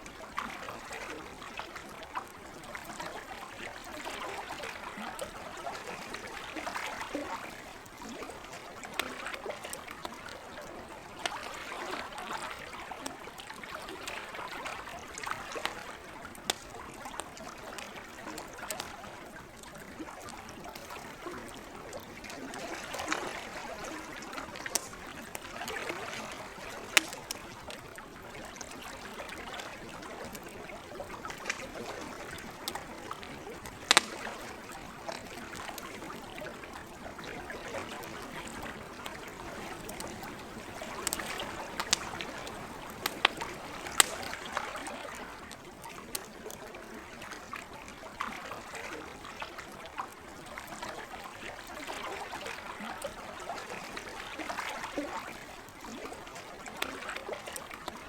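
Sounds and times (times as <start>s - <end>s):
lake water lapping: 0.0s - 58.0s
campfire crackling and popping: 2.2s - 47.5s.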